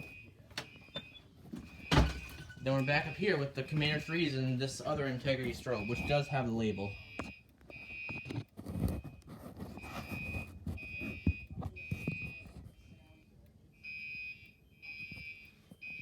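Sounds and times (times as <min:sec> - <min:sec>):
fire alarm horn blasts: 0:01.8 - 0:08.4, 0:13.7 - 0:16.0
low thumps and handling noise: 0:08.0 - 0:12.8.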